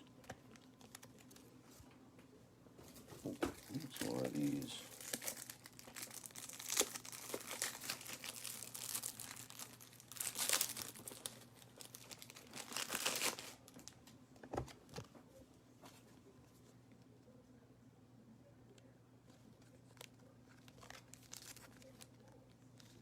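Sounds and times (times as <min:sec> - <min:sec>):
plastic card sleeves crinkling: 0:00.1 - 0:01.6, 0:03.4 - 0:14.0, 0:19.3 - 0:23.0.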